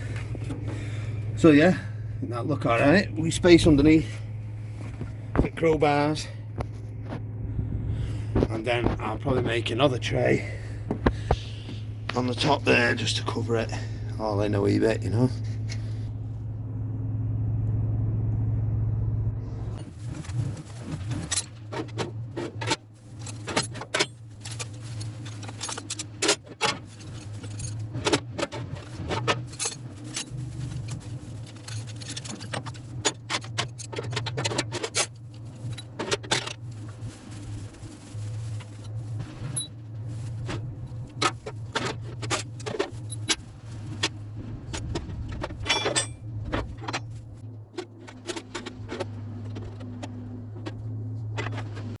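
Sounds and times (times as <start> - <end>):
low hum: 0.0 - 52.0
metal clinking and knocking: 44.7 - 47.1.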